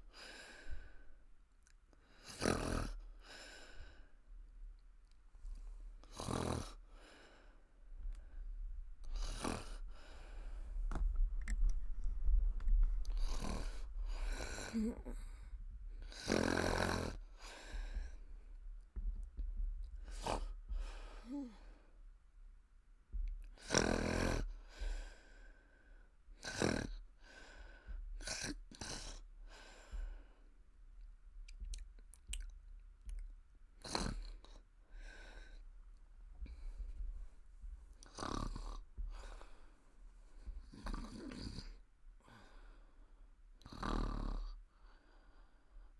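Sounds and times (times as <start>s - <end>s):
woman snoring: 2.2s - 3.1s, 6.0s - 6.8s, 9.0s - 10.0s, 13.1s - 18.1s, 20.1s - 21.7s, 23.6s - 24.5s, 26.4s - 27.0s, 33.8s - 34.5s, 38.0s - 39.6s, 40.7s - 42.4s, 43.6s - 44.6s
wet mouth and lip smacking: 31.4s - 33.3s.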